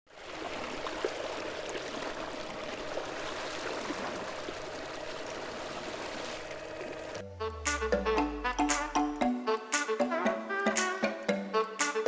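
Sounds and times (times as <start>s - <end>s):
running water rushing: 0.1s - 7.7s
steady mid-pitched hum: 2.1s - 9.2s.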